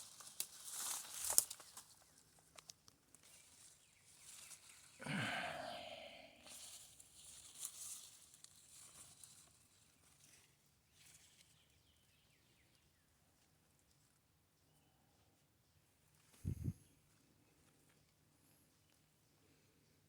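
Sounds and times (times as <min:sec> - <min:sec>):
footsteps through dry brush: 0:00.0 - 0:02.3, 0:06.4 - 0:10.4
twigs crackling and snapping: 0:00.0 - 0:05.0, 0:06.4 - 0:10.4
short low vocal sound: 0:05.0 - 0:06.4, 0:16.4 - 0:16.8.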